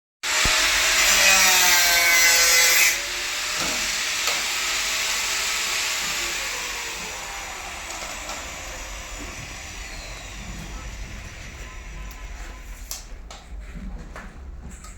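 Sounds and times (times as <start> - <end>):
power tool grinding: 0.2 - 12.4
motor whine winding down: 3.0 - 12.7.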